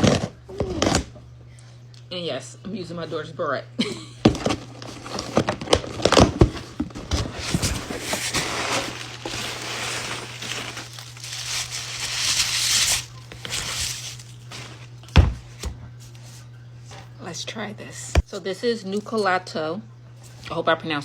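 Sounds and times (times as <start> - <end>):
wrapping crinkling and tearing: 4.4 - 15.1.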